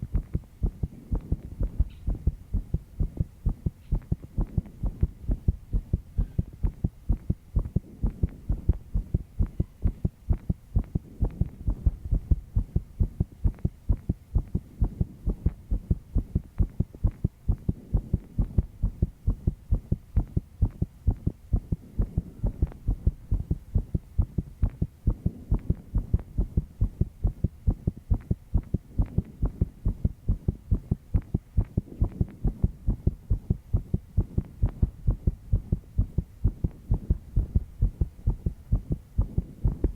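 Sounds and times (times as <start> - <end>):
faint steady hum: 0.0 - 39.9
fast heartbeat thumping: 0.0 - 39.9.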